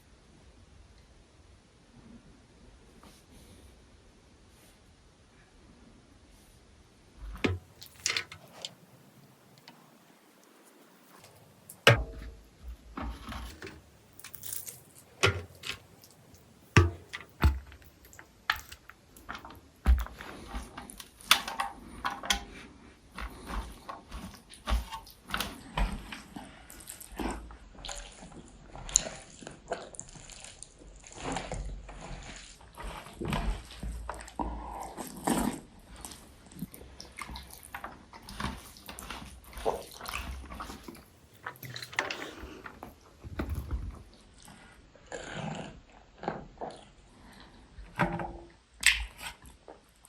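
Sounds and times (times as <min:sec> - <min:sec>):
wet eating clicks and smacks: 0:48.8 - 0:49.6.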